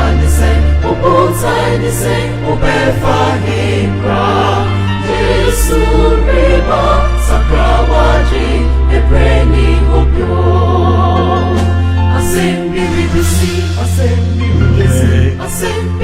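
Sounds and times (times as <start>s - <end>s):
choir singing gospel music: 0.0s - 16.0s
long held bass notes: 14.2s - 15.7s.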